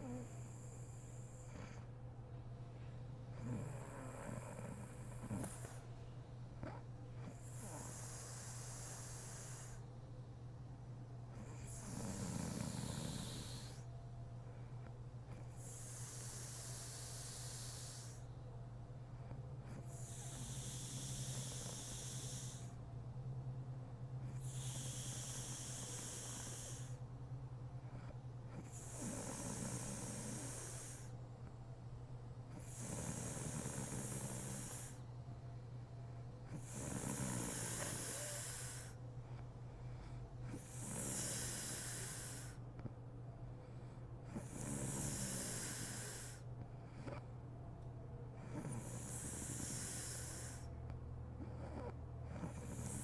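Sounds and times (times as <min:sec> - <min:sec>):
woman snoring: 0:00.0 - 0:00.8, 0:03.4 - 0:05.8, 0:07.2 - 0:09.8, 0:11.4 - 0:13.9, 0:15.6 - 0:18.2, 0:19.9 - 0:22.8, 0:24.3 - 0:27.0, 0:28.6 - 0:31.1, 0:32.6 - 0:35.0, 0:36.5 - 0:39.0, 0:40.5 - 0:42.6, 0:44.3 - 0:46.4, 0:48.5 - 0:50.7, 0:51.6 - 0:53.0
steady low hum: 0:00.0 - 0:53.0.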